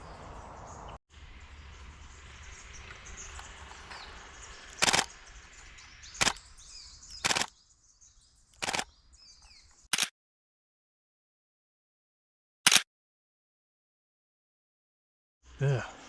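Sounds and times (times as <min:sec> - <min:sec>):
camera shutter bursts: 0:04.8 - 0:05.1, 0:06.2 - 0:06.4, 0:07.1 - 0:07.5, 0:08.6 - 0:08.9, 0:09.9 - 0:10.1.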